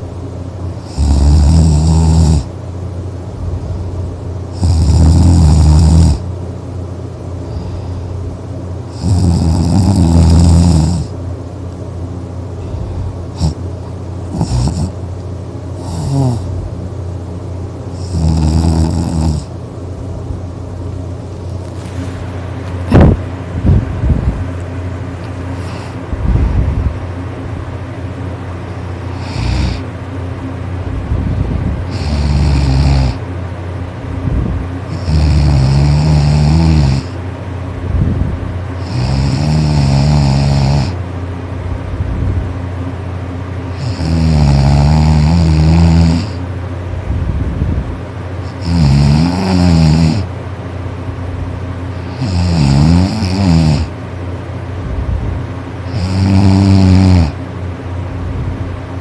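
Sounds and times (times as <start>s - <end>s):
person snoring: 0.8s - 2.5s, 4.6s - 6.2s, 8.9s - 11.1s, 13.3s - 13.6s, 14.3s - 15.0s, 15.8s - 16.5s, 18.0s - 19.5s, 25.6s - 26.0s, 29.0s - 29.8s, 31.9s - 33.2s, 34.9s - 37.2s, 38.8s - 41.0s, 43.7s - 46.4s, 48.5s - 50.3s, 52.0s - 53.9s, 55.9s - 57.4s
breathing: 7.4s - 8.2s, 12.6s - 13.5s, 25.5s - 26.8s.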